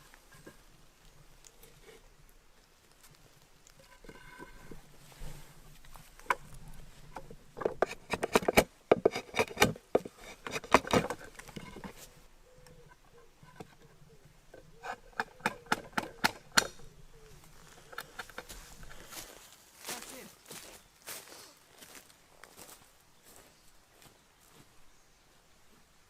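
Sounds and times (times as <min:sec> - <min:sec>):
wooden knocks and scrapes: 0:03.8 - 0:12.1.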